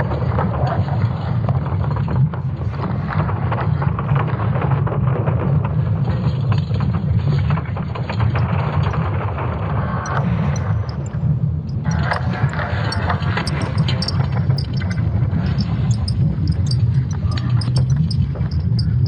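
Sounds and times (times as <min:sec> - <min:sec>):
creaking and crackles: 0:00.0 - 0:19.0
deep rumble: 0:09.1 - 0:19.0.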